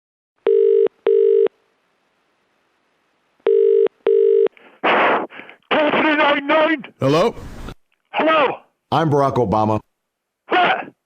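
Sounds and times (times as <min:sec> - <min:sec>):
telephone ringing tone: 0:00.4 - 0:01.6, 0:03.4 - 0:04.5.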